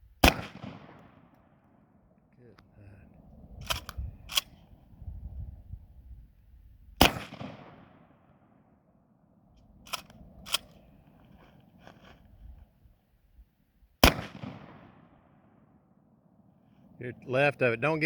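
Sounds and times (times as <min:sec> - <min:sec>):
shotgun shot with echo: 0:00.2 - 0:01.3, 0:07.0 - 0:08.2, 0:14.0 - 0:15.2
shotgun pump racking: 0:09.9 - 0:10.8.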